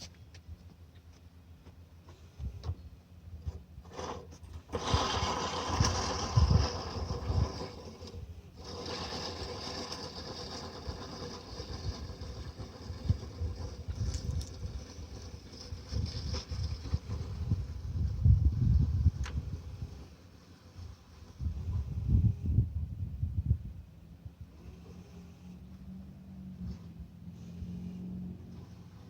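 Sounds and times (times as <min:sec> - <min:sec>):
low thumps of mower: 0:00.0 - 0:22.6
reel mower blades whirring: 0:03.5 - 0:22.4, 0:24.5 - 0:29.0.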